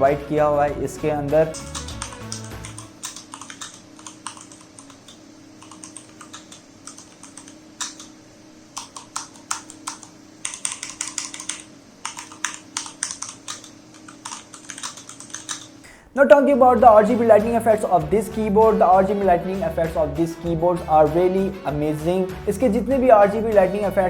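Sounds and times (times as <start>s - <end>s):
mechanical keyboard typing: 1.4s - 8.1s, 8.8s - 15.8s.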